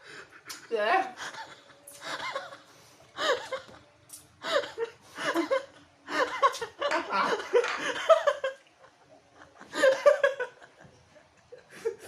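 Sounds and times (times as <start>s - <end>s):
person laughing: 1.2s - 2.6s.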